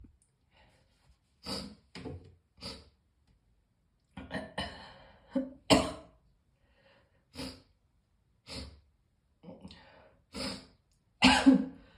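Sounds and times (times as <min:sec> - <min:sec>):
person coughing: 0:05.7 - 0:06.1, 0:11.2 - 0:11.8.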